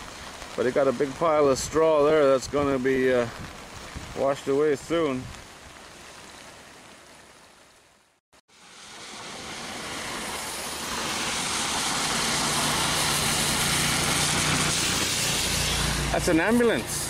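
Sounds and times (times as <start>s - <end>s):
road vehicle approaching: 8.5s - 17.0s.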